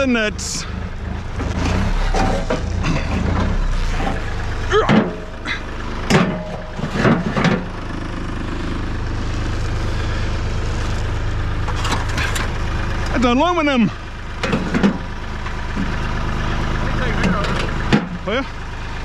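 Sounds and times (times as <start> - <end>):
engine idling: 0.0 - 19.0.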